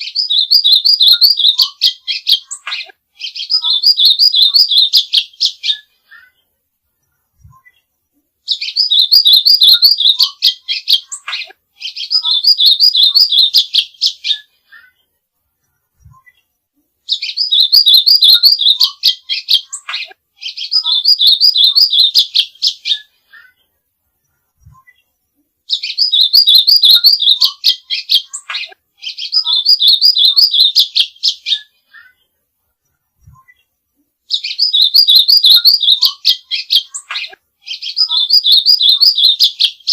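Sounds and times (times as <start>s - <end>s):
songbird high trilled phrases: 0.0s - 6.4s, 8.5s - 15.0s, 17.1s - 23.6s, 25.7s - 32.2s, 34.3s - 39.9s.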